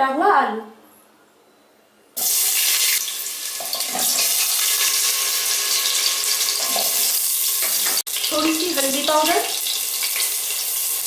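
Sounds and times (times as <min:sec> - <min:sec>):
potatoes sizzling in hot oil: 0:02.2 - 0:11.0.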